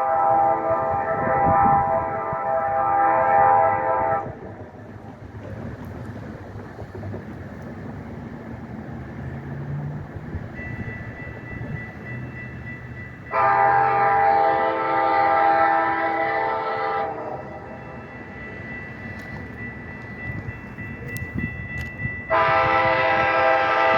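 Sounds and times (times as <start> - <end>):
locomotive air horn blast: 0.0 - 4.4, 13.3 - 17.7, 22.3 - 23.9
train rumbling: 0.0 - 23.9.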